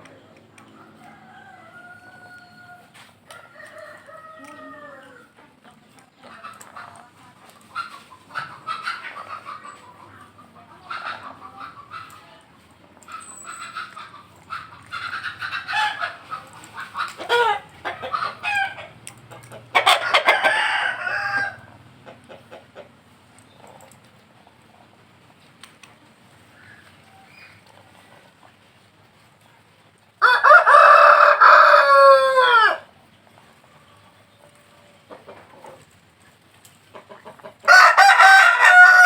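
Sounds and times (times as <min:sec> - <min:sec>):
chickens clucking: 0:00.0 - 0:39.0
rooster crowing: 0:00.8 - 0:05.3, 0:19.7 - 0:21.7, 0:30.2 - 0:32.9, 0:37.7 - 0:39.0.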